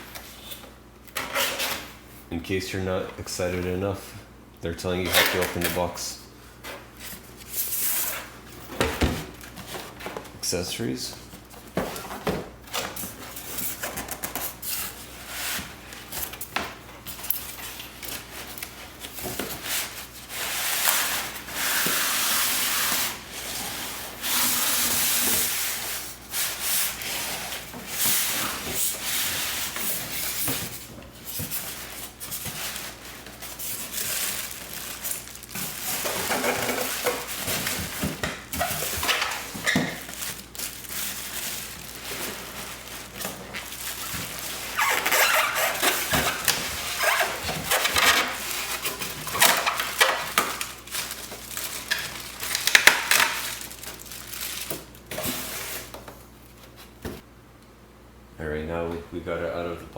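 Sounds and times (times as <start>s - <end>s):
cardboard and packing rustling: 5.0s - 57.3s.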